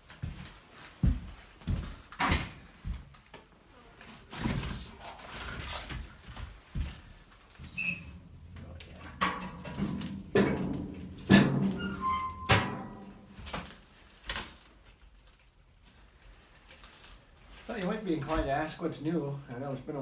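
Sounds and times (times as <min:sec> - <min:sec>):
rustling: 0:00.0 - 0:19.9
brief squeaks: 0:07.6 - 0:08.2, 0:11.7 - 0:12.6
knocks and thumps: 0:09.0 - 0:13.0.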